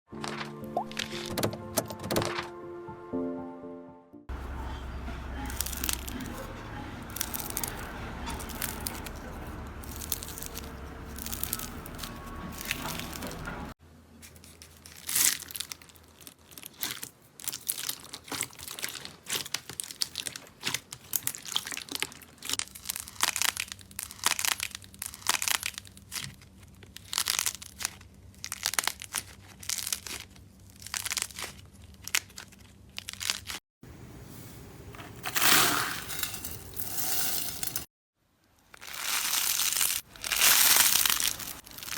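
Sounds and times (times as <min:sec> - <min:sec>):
crunchy slime crackling: 0:05.0 - 0:33.6, 0:38.6 - 0:41.9.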